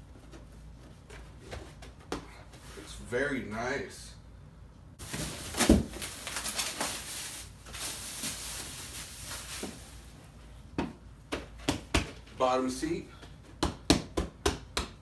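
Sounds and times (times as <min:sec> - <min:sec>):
plastic and cardboard rustling: 0:05.0 - 0:12.4.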